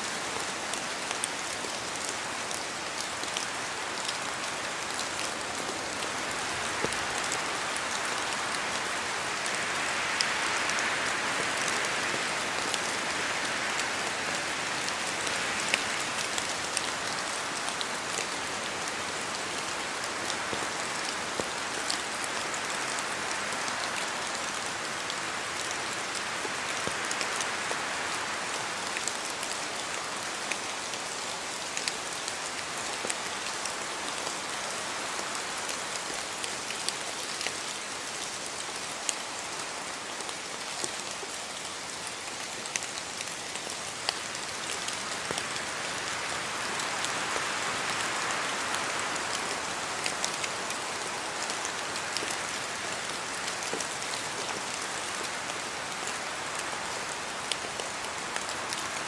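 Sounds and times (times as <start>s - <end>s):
rain hissing: 35.4s - 52.2s.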